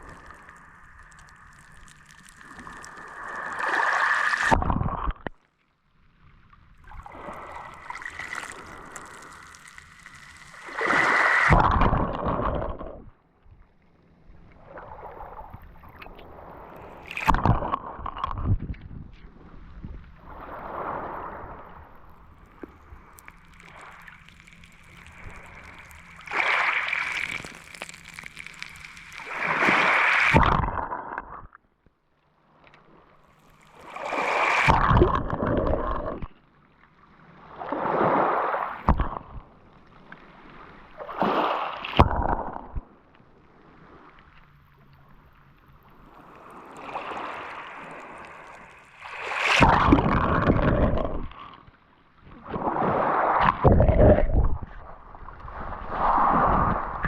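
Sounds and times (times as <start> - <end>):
small waves breaking on shore: 0.0 - 5.2, 6.8 - 12.8, 20.1 - 30.6, 32.8 - 35.0, 37.1 - 50.7
faint steady hum: 0.0 - 52.4.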